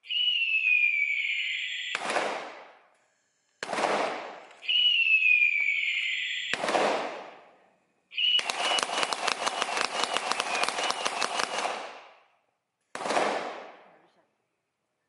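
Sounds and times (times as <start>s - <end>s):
falling firework whistle: 0.0s - 2.1s, 4.6s - 6.6s, 8.1s - 11.6s
firework bangs: 0.2s - 2.8s, 3.6s - 7.4s
firecracker-like cracks: 1.9s - 2.9s, 3.6s - 4.8s, 6.5s - 7.5s, 8.2s - 12.3s, 12.9s - 13.9s.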